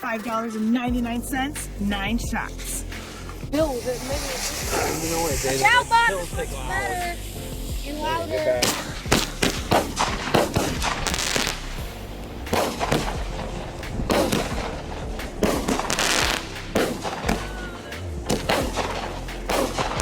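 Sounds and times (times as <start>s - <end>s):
firework crackling: 1.6s - 20.0s
firework bangs: 2.8s - 20.0s.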